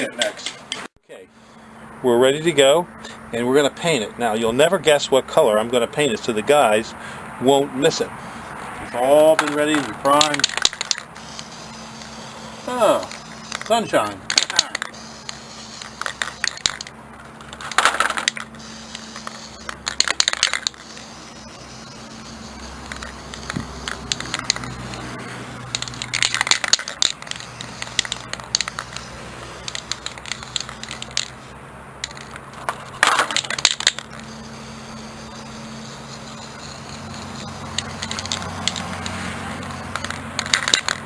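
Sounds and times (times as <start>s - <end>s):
steady low hum: 0.0s - 41.0s
aerosol spray bursts: 9.7s - 16.9s, 17.5s - 41.0s.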